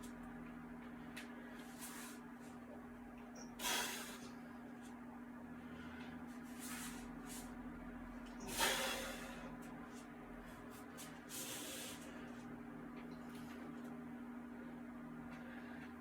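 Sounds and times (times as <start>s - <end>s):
steady low hum: 0.0s - 16.0s
person breathing hard: 8.4s - 9.7s, 11.3s - 12.5s.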